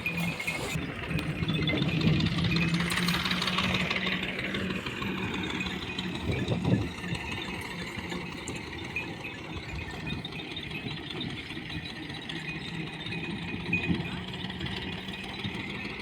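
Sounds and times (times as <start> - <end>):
engine running: 0.0 - 16.0.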